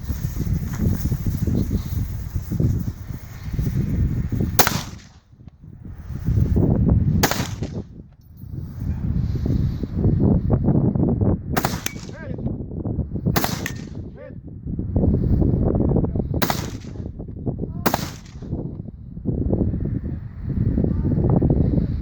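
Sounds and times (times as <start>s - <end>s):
rifle shots: 4.6s - 5.2s, 7.2s - 7.9s, 11.6s - 12.3s, 13.4s - 14.0s, 16.4s - 17.1s, 17.9s - 18.6s.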